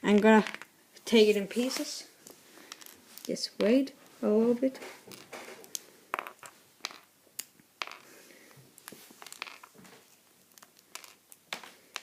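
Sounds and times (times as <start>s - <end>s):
plastic bricks clicking and clattering: 5.1s - 8.1s, 8.8s - 12.0s.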